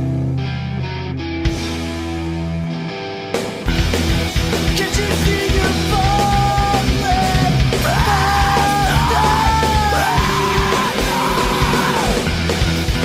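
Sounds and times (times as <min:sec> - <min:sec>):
punk rock band playing: 0:00.0 - 0:13.0
person yelling vocals: 0:04.8 - 0:12.3.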